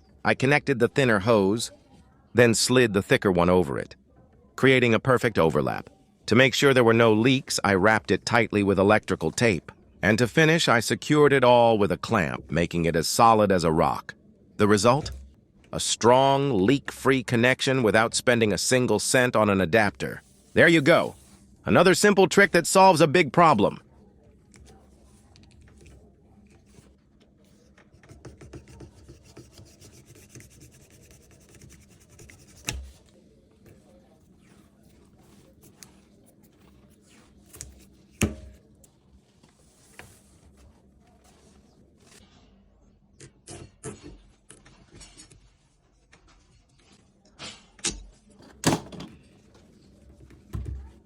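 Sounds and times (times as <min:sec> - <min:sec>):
rubbing and scraping handling noise: 0:19.0 - 0:22.5, 0:23.7 - 0:42.6.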